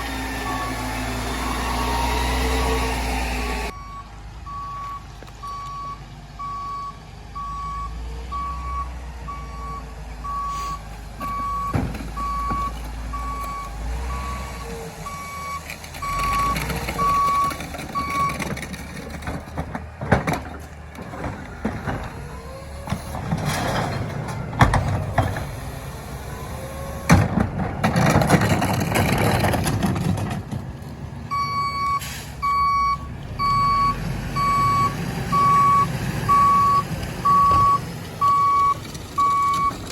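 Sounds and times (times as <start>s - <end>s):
truck engine running: 0.0s - 39.9s
backup alarm beeping: 3.7s - 18.4s, 31.3s - 39.8s
garbage truck rattling: 11.0s - 39.9s.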